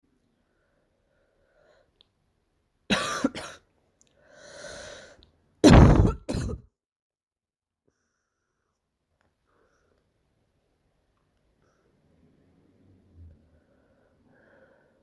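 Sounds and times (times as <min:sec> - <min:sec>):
noisy drawn-in breath: 0:00.3 - 0:02.0, 0:04.2 - 0:05.2, 0:09.4 - 0:10.4, 0:11.5 - 0:15.0
girl coughing: 0:02.9 - 0:03.6, 0:05.6 - 0:06.7.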